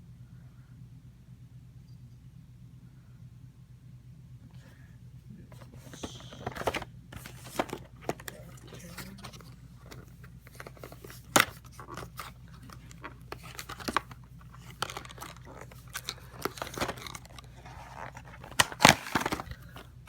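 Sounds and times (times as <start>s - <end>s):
cards and plastic packaging handled: 5.5s - 20.0s.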